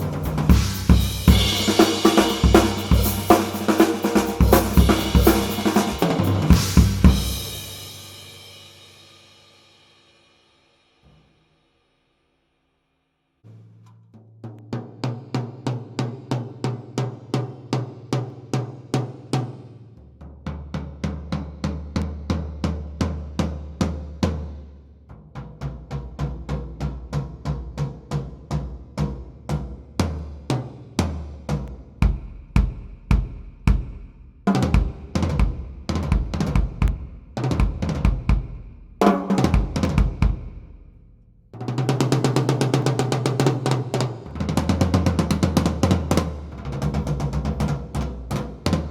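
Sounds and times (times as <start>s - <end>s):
bass drum: 0.0s - 7.9s, 31.6s - 41.1s
tom drum strokes: 0.0s - 8.8s, 32.0s - 40.8s
fast drum roll: 0.0s - 9.1s, 25.5s - 40.8s, 41.6s - 48.9s
cymbals: 0.0s - 11.0s.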